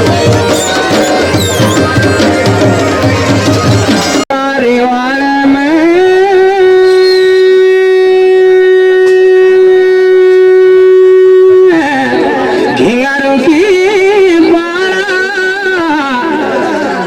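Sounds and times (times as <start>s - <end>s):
reedy wind instrument melody: 0.0s - 4.2s.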